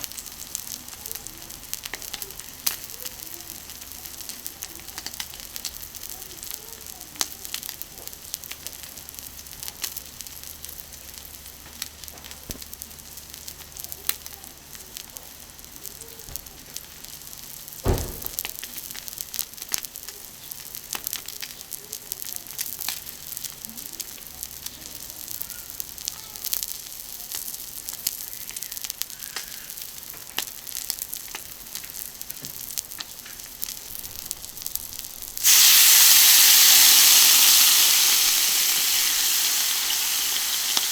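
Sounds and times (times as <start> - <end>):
fat crackling and popping: 0.0 - 40.9
steak sizzling on griddle: 0.0 - 40.9
sharp knock: 17.8 - 18.4.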